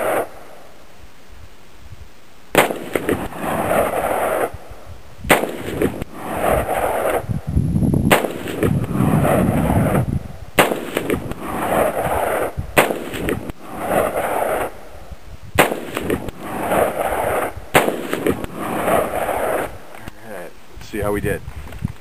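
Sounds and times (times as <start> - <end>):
rifle shots with echo: 0.0 - 0.6, 2.5 - 4.7, 5.3 - 7.3, 8.1 - 14.9, 15.6 - 19.9.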